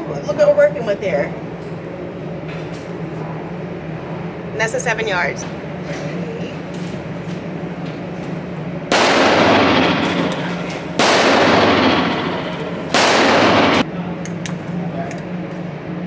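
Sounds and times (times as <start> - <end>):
echoing gunshots: 8.9 - 13.9.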